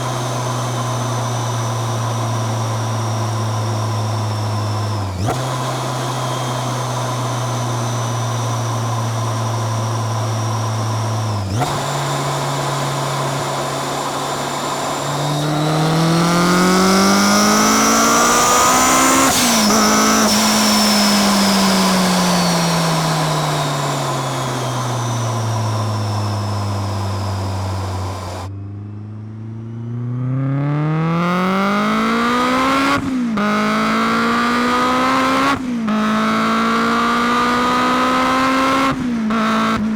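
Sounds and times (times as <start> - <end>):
gear change: 0.0 - 28.5
car engine revving: 0.0 - 39.9
supercharger whine: 0.0 - 39.9.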